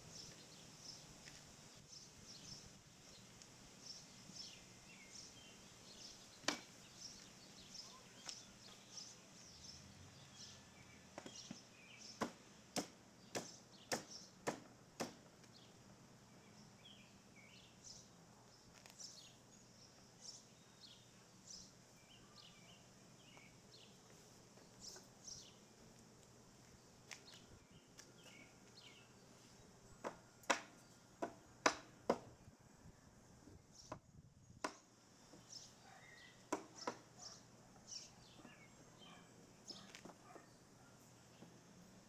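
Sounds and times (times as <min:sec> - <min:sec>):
small birds chirping: 0:00.0 - 0:42.0.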